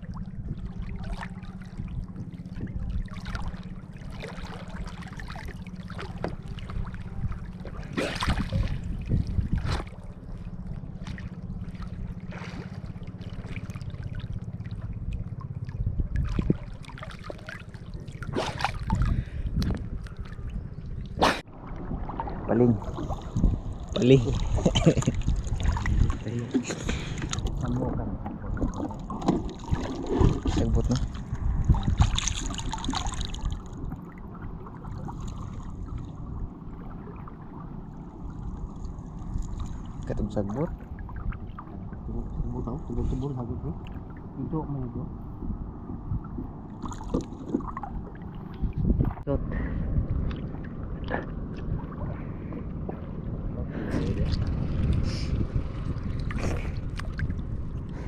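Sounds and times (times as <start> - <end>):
water splashing and sloshing: 0.0 - 58.0
wind on microphone: 6.2 - 10.6, 14.7 - 16.9, 17.5 - 37.4, 38.3 - 58.0.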